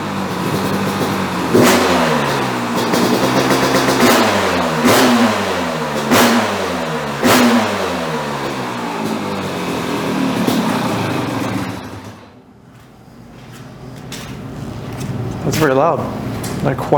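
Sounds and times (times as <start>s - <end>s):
dirt bike engine revving: 0.0s - 12.4s.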